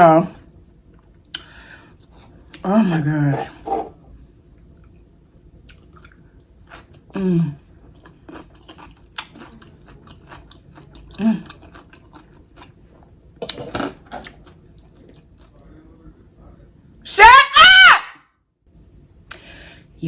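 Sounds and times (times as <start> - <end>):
chewing and biting food: 7.8 - 15.6
wet mouth clicks: 8.7 - 9.4, 19.3 - 19.5.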